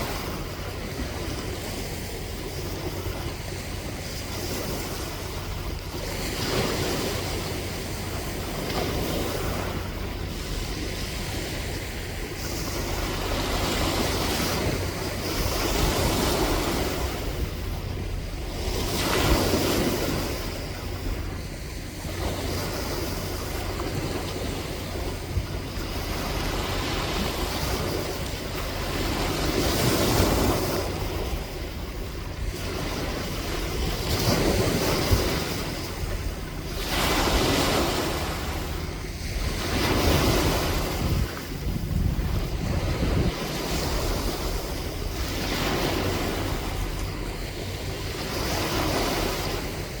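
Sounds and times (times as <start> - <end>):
sea waves breaking on shore: 0.0 - 50.0.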